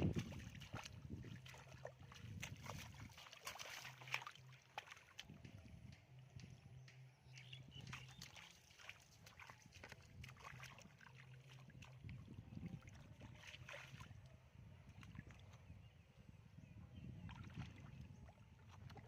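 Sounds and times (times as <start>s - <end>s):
shallow water sloshing: 0.0s - 5.4s, 7.9s - 14.2s.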